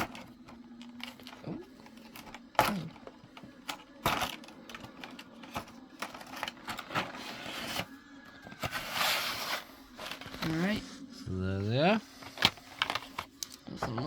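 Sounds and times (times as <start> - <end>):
packaging snapping: 0.0 - 7.8
toy packaging clicks and rustles: 0.0 - 10.8, 12.1 - 14.0.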